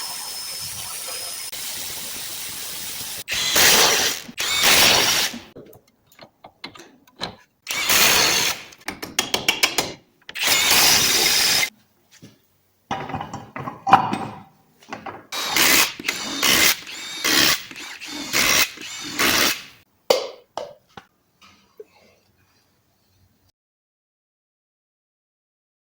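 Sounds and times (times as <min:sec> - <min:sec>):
power tool bursts: 0:01.6 - 0:05.5, 0:07.7 - 0:08.7, 0:10.4 - 0:11.7, 0:15.4 - 0:19.8.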